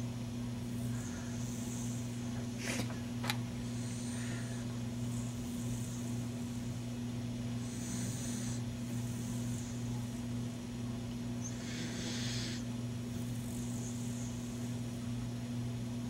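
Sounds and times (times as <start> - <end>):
dog snoring: 0.7 - 2.8, 3.6 - 6.9, 7.6 - 10.4, 11.4 - 15.0.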